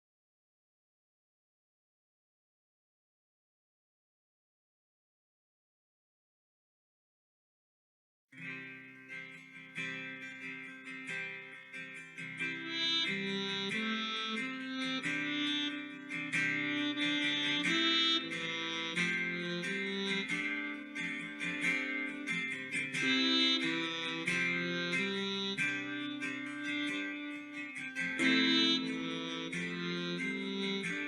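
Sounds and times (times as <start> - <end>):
instrumental guitar music: 8.4 - 31.0.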